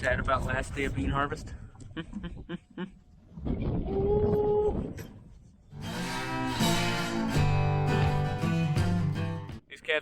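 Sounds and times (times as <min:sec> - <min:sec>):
acoustic guitar music: 0:05.7 - 0:09.6.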